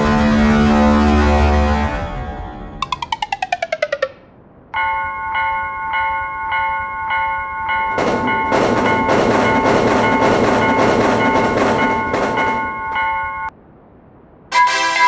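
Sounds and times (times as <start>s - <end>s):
railroad crossing bell ringing: 4.8s - 13.5s
train wheels rushing and clattering: 7.8s - 13.5s.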